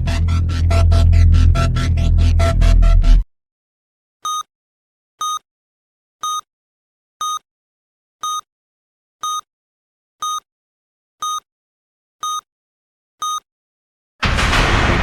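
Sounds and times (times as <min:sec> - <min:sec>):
electronic countdown beeps: 0:04.2 - 0:04.5, 0:05.2 - 0:05.4, 0:06.2 - 0:06.5, 0:07.2 - 0:07.4, 0:08.2 - 0:08.5, 0:09.2 - 0:09.5, 0:10.2 - 0:10.4, 0:11.2 - 0:11.4, 0:12.2 - 0:12.5, 0:13.2 - 0:13.4.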